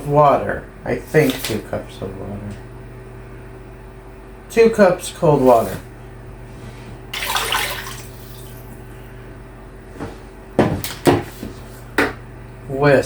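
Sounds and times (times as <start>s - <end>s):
water pouring into pot: 7.2s - 8.7s.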